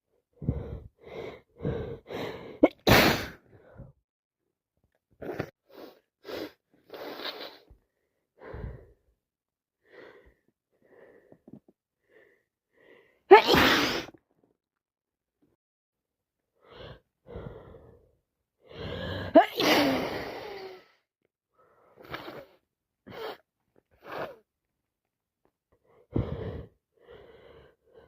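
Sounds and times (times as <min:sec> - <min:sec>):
person sneezing: 0:02.6 - 0:03.4, 0:13.3 - 0:14.2, 0:19.4 - 0:20.8.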